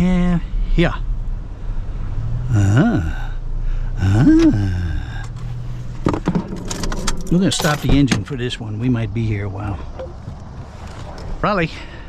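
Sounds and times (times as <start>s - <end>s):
vehicle engine idling: 3.4s - 12.0s
man humming hmm: 4.0s - 5.2s.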